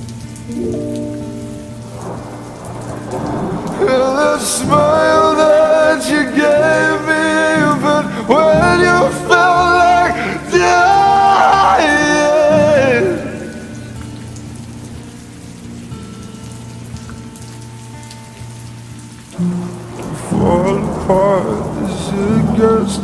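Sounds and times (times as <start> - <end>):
rain sound: 0.0 - 23.0
wordless sung vocal: 2.0 - 14.4, 19.4 - 23.0.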